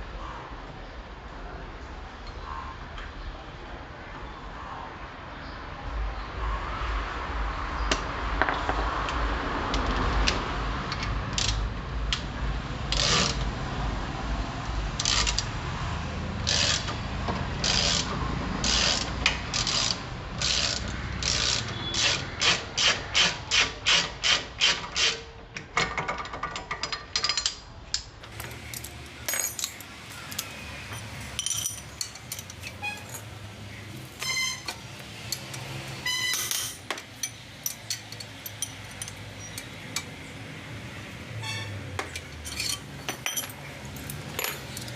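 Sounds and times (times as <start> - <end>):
ratchet wrench clicking: 10.9 - 11.6, 15.0 - 15.5, 16.5 - 16.9, 37.1 - 40.1.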